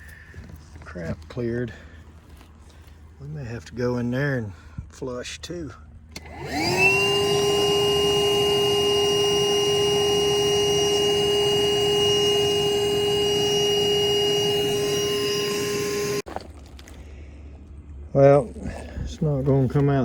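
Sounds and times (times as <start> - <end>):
shop vacuum running with high whine: 6.1 - 16.3.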